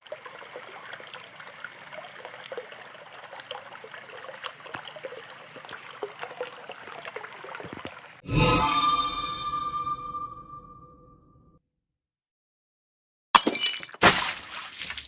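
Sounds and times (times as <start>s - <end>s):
water trickling: 0.0s - 8.2s.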